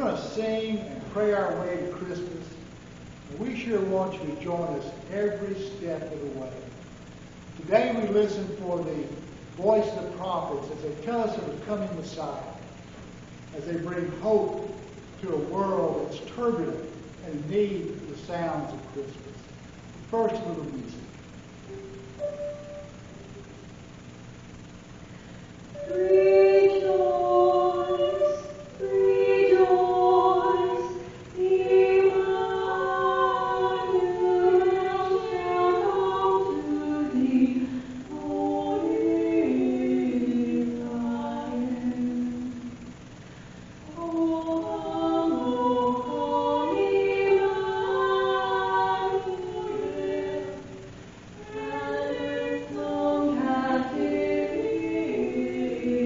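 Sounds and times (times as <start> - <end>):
choir singing a hymn: 25.8 - 43.0, 43.9 - 56.0.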